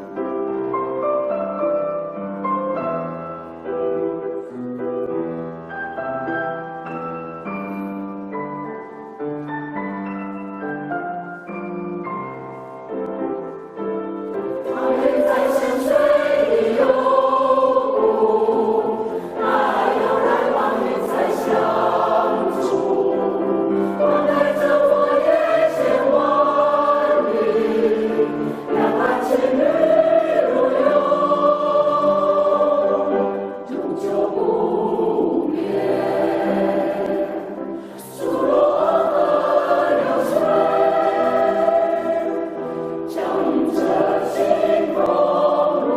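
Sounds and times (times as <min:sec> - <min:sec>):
instrumental music: 0:00.0 - 0:45.9
choir singing: 0:14.3 - 0:45.9.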